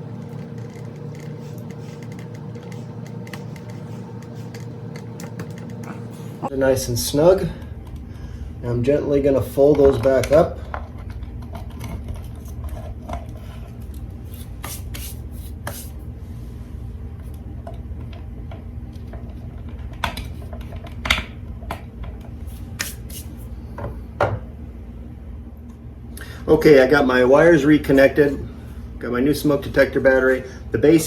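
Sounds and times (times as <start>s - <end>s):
wires rubbing and scraping: 0.0s - 6.2s, 9.6s - 16.0s.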